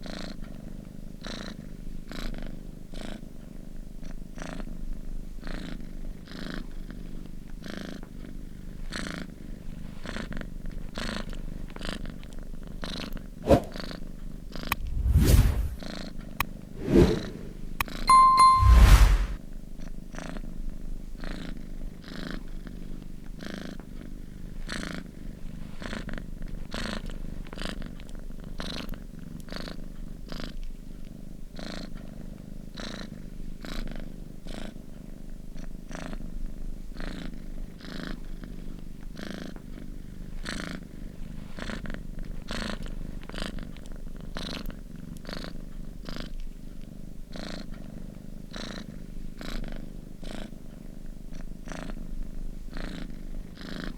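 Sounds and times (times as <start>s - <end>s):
cat purring: 37.0s - 53.9s.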